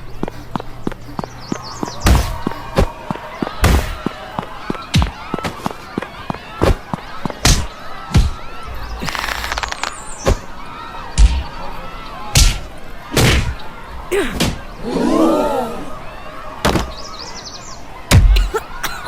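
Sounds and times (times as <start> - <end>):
person crying out: 18.4 - 18.8.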